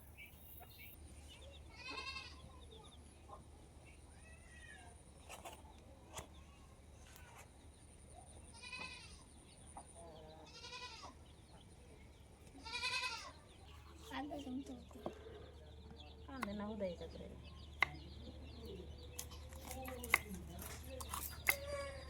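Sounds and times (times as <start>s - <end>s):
goat bleating: 1.8s - 2.4s, 8.5s - 9.2s, 10.5s - 11.2s, 12.6s - 13.4s.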